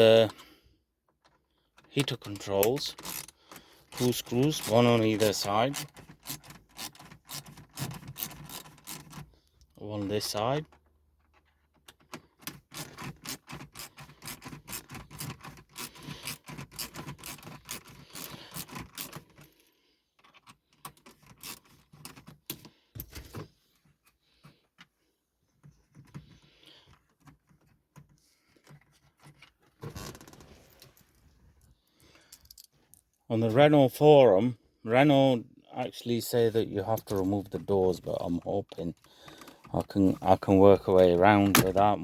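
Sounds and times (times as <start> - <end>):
hand tool clicking and scraping: 1.3 - 9.3, 11.2 - 19.6, 39.0 - 42.0.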